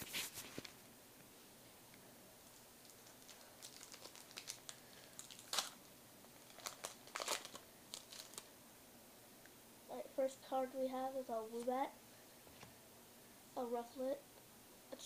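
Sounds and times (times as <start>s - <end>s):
foil wrapper crinkling and tearing: 2.8s - 8.5s.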